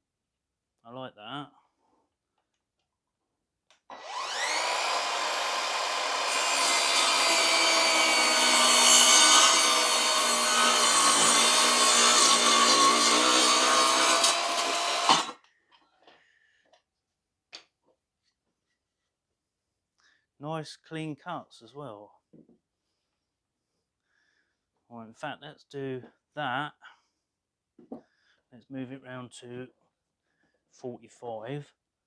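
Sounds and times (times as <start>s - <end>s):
mitre saw motor whine: 3.9s - 8.9s
saw blade cutting wood: 3.9s - 15.4s.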